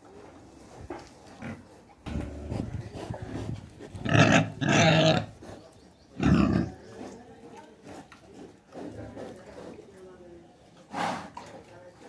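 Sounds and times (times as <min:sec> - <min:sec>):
pigs grunting: 0:01.3 - 0:05.6, 0:06.2 - 0:06.8.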